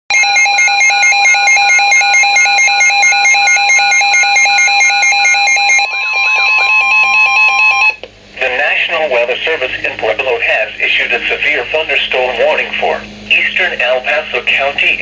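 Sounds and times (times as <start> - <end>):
rapid pulsing beeps: 0.1 - 8.0, 10.8 - 15.0
steady electronic alert tone: 0.1 - 8.0.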